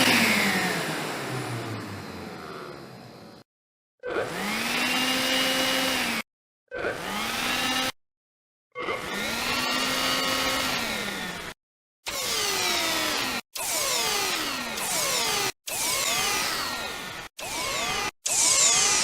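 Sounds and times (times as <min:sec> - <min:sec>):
vacuum cleaner motor whining: 0:00.0 - 0:02.9, 0:04.2 - 0:06.1, 0:09.0 - 0:11.4, 0:12.1 - 0:19.0.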